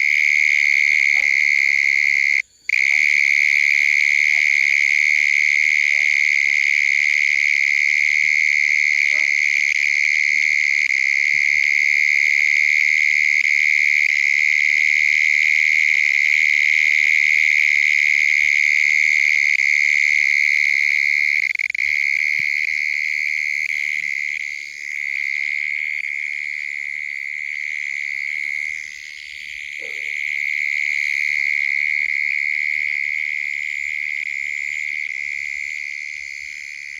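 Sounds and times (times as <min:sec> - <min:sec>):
shrill animal trill: 0:00.9 - 0:02.1, 0:09.0 - 0:11.4.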